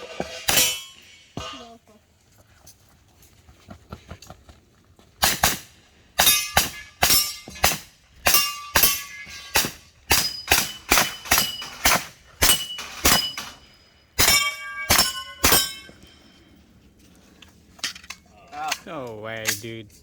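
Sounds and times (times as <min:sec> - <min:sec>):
steel targets ringing: 0:00.0 - 0:01.7, 0:06.2 - 0:16.5.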